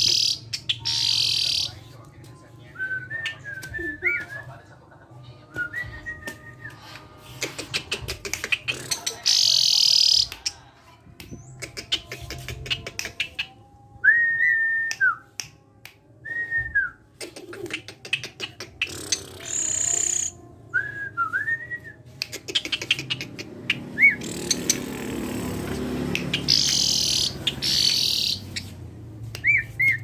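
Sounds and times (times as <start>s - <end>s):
harsh rasping bird call: 0.0s - 1.7s, 26.4s - 28.5s
starling sharp clicks: 26.1s - 28.3s.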